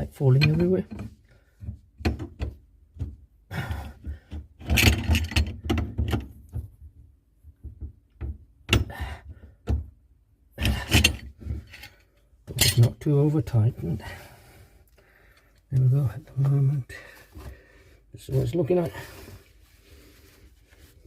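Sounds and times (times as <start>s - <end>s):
spanners clanking on copper pipe: 0.2s - 1.7s, 4.6s - 6.2s, 10.6s - 13.1s.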